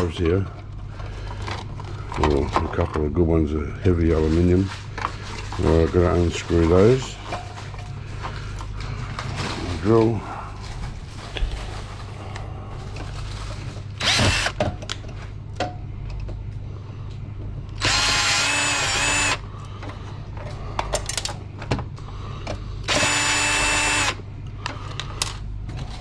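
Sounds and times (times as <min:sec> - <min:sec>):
power drill whining: 0:14.0 - 0:14.6, 0:17.8 - 0:19.4, 0:22.9 - 0:24.2.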